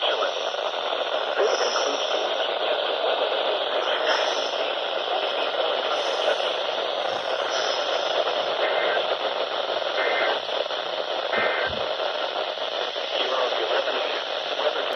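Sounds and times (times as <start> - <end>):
faint data chirps: 0.0 - 10.4
radio static hiss: 0.0 - 14.9.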